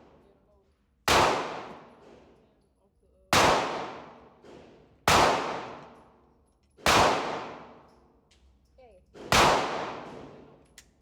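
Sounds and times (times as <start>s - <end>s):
gunshots with echo: 1.1s - 2.2s, 3.3s - 6.0s, 6.8s - 7.9s, 9.2s - 10.6s.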